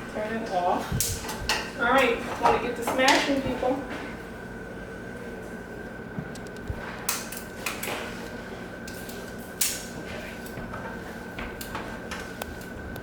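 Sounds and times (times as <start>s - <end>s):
steady hum: 0.0s - 13.0s
kitchen utensils clattering: 1.3s - 3.8s.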